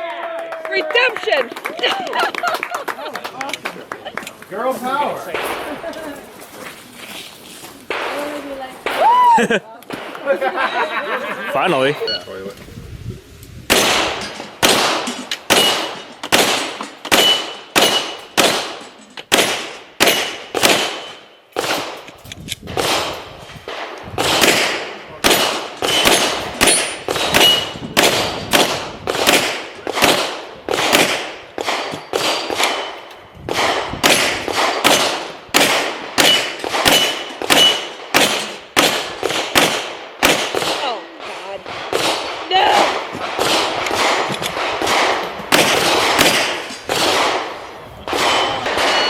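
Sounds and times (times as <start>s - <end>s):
pistol shots: 13.7s - 22.1s, 22.7s - 49.0s
steel plate clanging: 48.2s - 49.0s.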